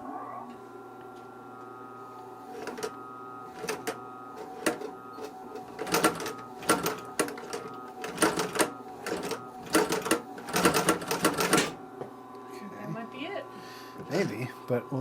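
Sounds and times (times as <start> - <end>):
sewing machine motor hum: 1.9 - 11.9
sewing machine needle clatter: 4.6 - 11.8.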